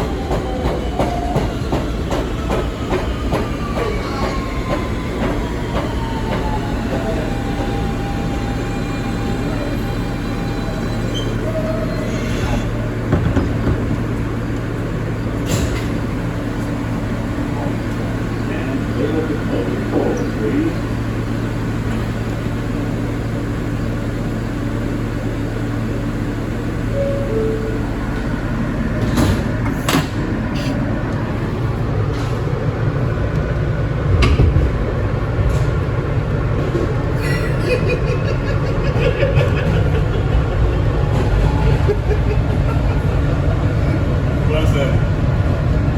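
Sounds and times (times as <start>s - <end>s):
subway car running on track: 0.0s - 45.9s
high ringing tones: 27.0s - 28.4s.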